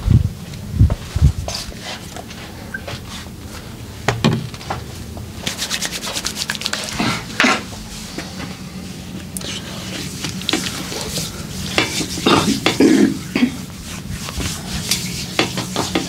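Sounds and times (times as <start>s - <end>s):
fast massage strokes: 5.4s - 7.3s
hands rubbing skin and clothing: 5.4s - 8.2s, 9.4s - 12.8s, 13.4s - 16.0s.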